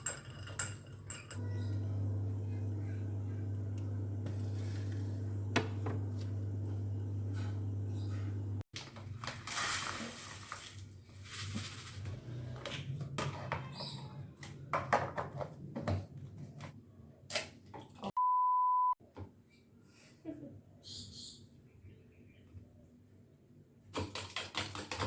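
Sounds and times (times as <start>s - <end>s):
steady low hum: 1.4s - 8.6s.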